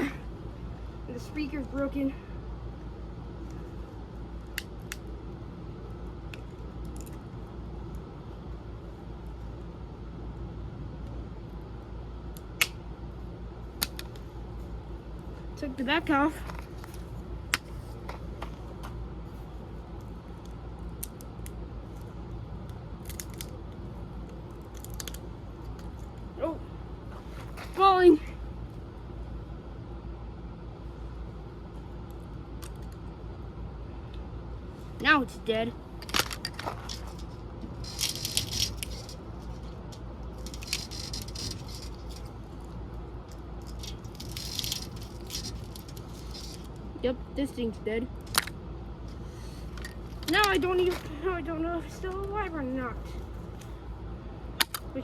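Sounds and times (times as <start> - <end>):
steady low hum: 0.0 - 55.0
plastic parts rattling and clicking: 36.0 - 42.3, 43.3 - 46.8.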